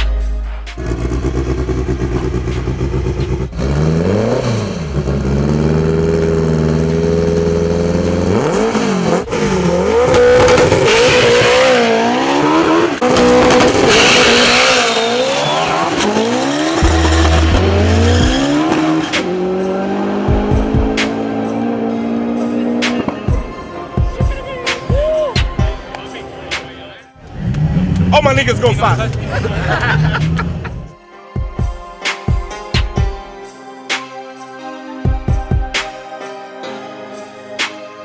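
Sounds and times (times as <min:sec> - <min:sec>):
car engine accelerating hard: 0:00.8 - 0:23.2, 0:27.2 - 0:31.0.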